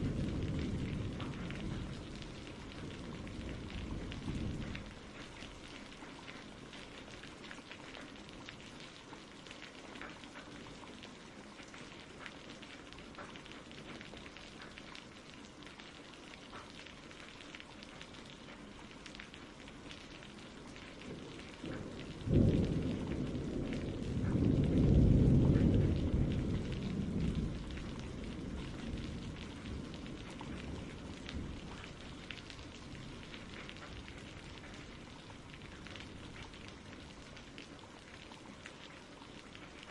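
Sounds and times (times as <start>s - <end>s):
thunder crack and rumble: 0.0s - 6.1s, 20.8s - 38.2s
steady rain falling: 0.0s - 39.9s.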